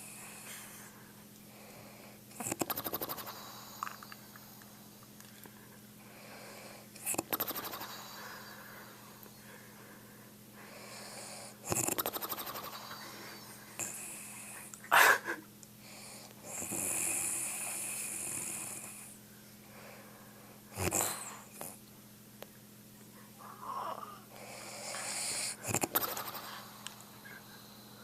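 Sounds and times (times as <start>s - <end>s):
faint steady hum: 0.0s - 28.0s
woman snoring: 6.2s - 9.0s, 10.8s - 15.2s, 16.5s - 19.2s, 20.8s - 21.7s, 23.4s - 28.0s.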